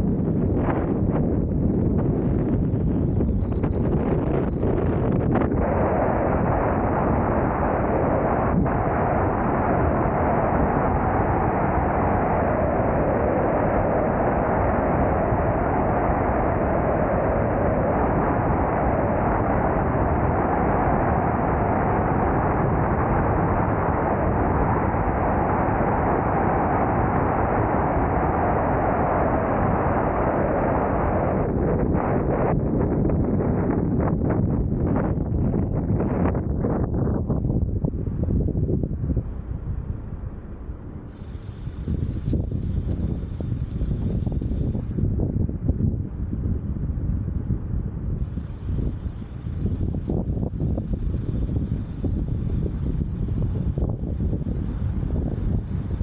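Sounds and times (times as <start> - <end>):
wind rush: 0.0 - 56.0
car engine at speed: 38.0 - 45.0.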